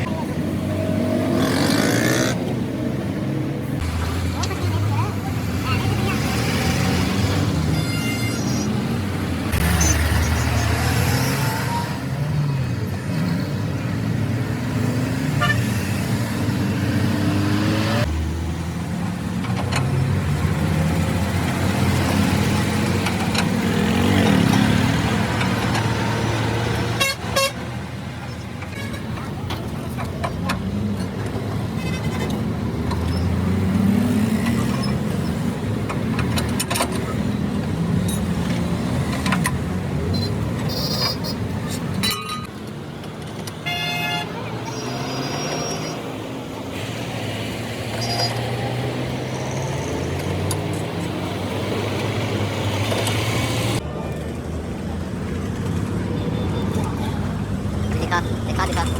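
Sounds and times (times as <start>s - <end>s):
vehicle engines running: 0.0s - 58.9s
car horns sounding: 7.6s - 8.8s, 26.9s - 27.7s, 40.1s - 42.4s, 43.5s - 46.1s.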